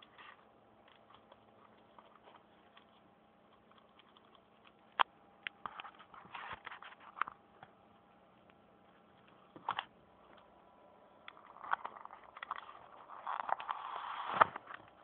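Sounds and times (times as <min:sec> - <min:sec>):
paper rustling: 0:05.7 - 0:07.4.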